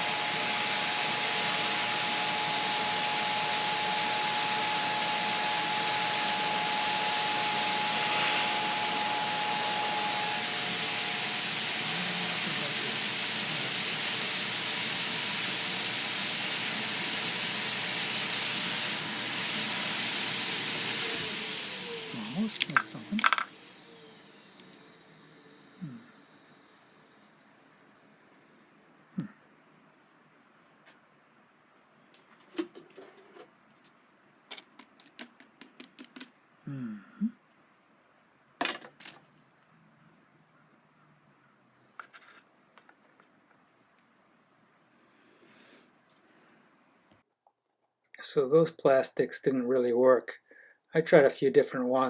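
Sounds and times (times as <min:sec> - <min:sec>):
heat gun blowing: 0:00.0 - 0:25.1
clicks of small hard objects: 0:22.5 - 0:23.5.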